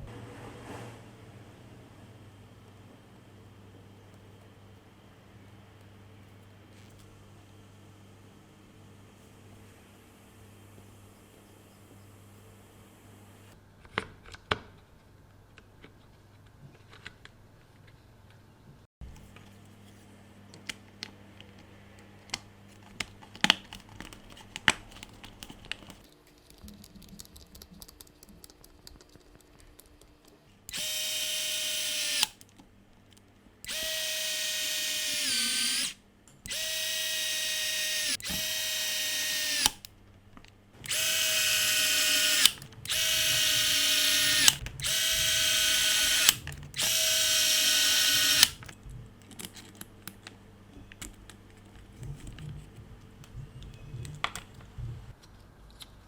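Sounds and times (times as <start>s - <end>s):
cordless drill motor whining: 30.7s - 32.4s, 33.7s - 39.8s, 40.8s - 48.6s.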